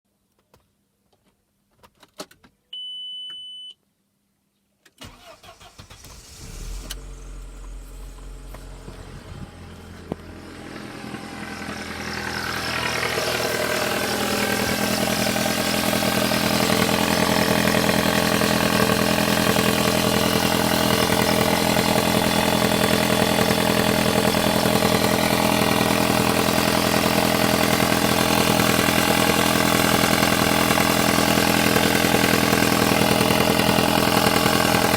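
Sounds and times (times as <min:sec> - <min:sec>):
short beep: 0:02.7 - 0:03.8
car engine cranking and idling: 0:05.0 - 0:34.9.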